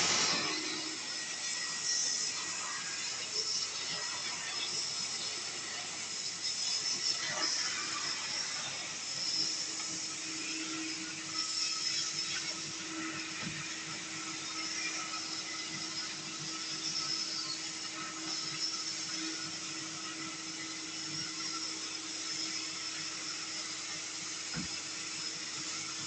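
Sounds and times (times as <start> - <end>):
vacuum cleaner motor whine: 0.0 - 26.0
knock: 24.5 - 24.7.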